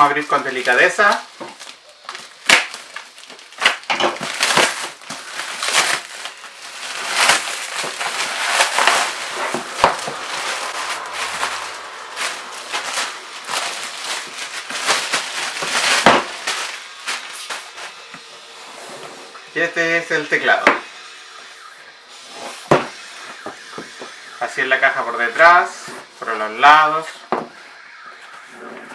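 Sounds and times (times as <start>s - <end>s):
packaging crinkling and crackling: 0.0s - 18.5s.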